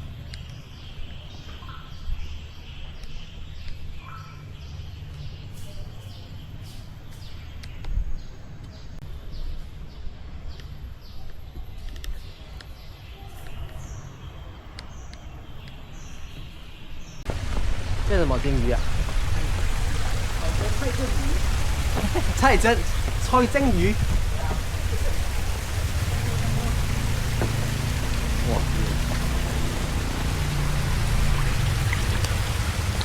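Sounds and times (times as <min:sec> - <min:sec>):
small birds chirping: 0:00.0 - 0:17.4, 0:18.1 - 0:33.0
wind rumble on microphone: 0:17.3 - 0:33.0.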